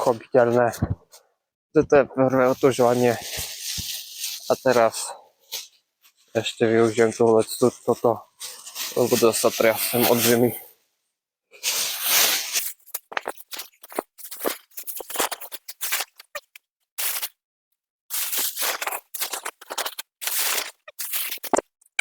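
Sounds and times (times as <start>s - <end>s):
rustling and rubbing: 2.3s - 6.3s, 7.8s - 10.5s, 11.6s - 17.4s, 18.1s - 21.7s.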